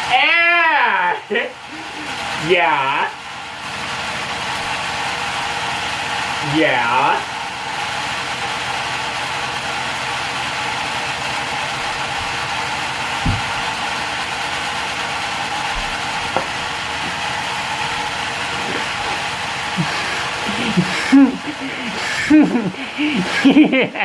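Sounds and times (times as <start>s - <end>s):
light knock: 13.2s - 13.7s.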